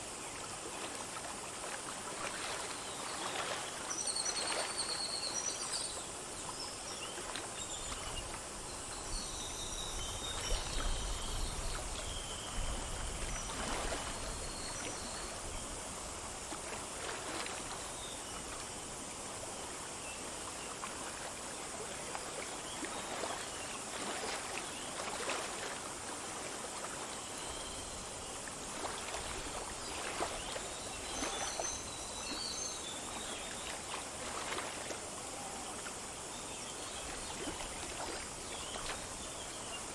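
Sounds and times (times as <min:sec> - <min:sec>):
stream splashing over stones: 0:00.0 - 0:04.9, 0:16.2 - 0:39.9.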